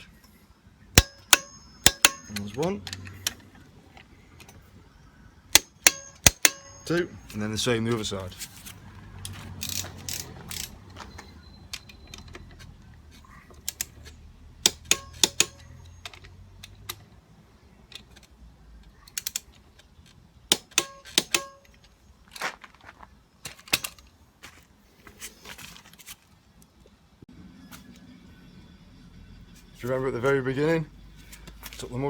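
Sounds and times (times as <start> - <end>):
metallic clinks of hand tools: 1.0 - 3.4, 5.6 - 8.1, 14.7 - 16.3
torque wrench clicks: 5.6 - 7.0, 14.6 - 17.0.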